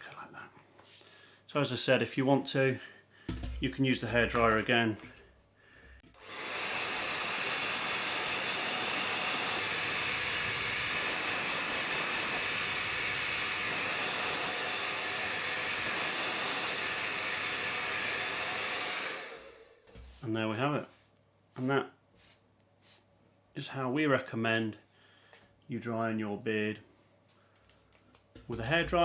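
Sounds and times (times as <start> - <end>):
hairdryer blowing: 6.0 - 20.3.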